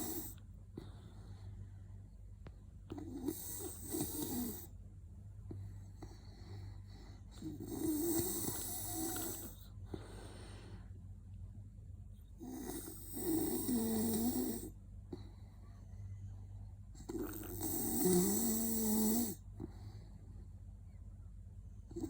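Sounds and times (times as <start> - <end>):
droning snores: 0.0 - 1.6, 2.9 - 4.8, 5.5 - 10.9, 12.4 - 20.4.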